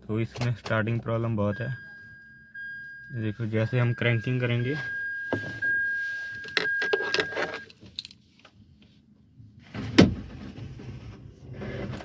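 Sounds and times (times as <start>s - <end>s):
steady electronic beep: 1.5s - 7.7s.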